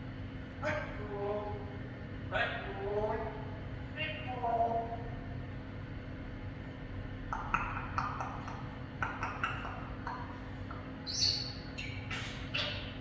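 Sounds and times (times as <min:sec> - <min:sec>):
parrot sharp clicks: 0:07.4 - 0:12.8.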